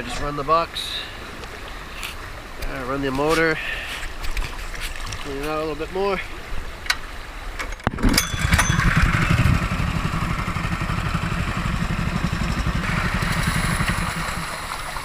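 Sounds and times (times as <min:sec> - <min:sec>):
water rushing over sluice box: 0:00.2 - 0:15.0
small gasoline engine running: 0:08.1 - 0:15.0.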